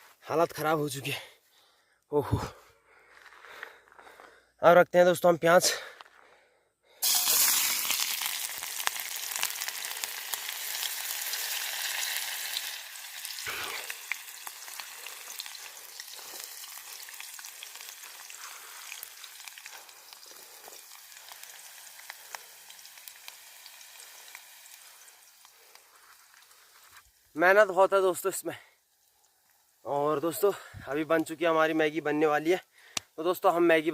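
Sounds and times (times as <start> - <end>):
onions sizzling in hot oil: 7.0 - 27.3, 28.9 - 29.9.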